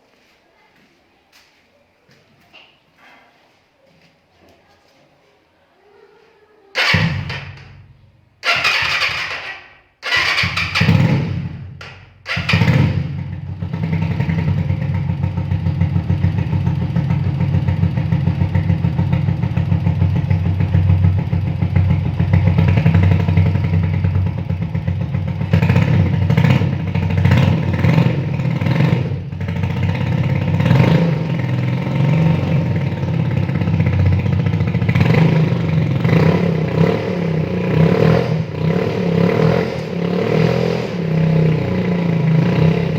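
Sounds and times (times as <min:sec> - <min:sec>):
motorcycle engine running: 0:12.4 - 0:42.9.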